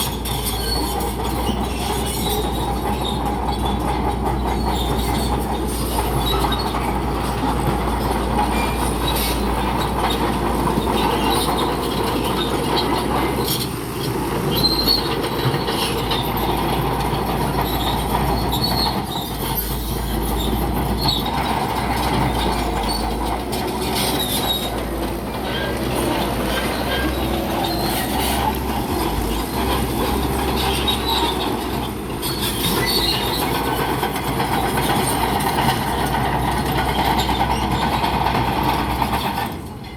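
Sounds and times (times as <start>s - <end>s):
crawler tracks squeaking and clanking: 0.0s - 39.9s
diesel engine running: 0.0s - 39.9s.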